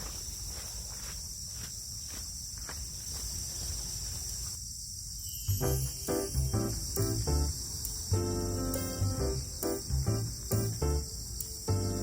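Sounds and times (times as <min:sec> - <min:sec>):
high-pitched insect chorus: 0:00.0 - 0:12.0
music: 0:05.4 - 0:12.0.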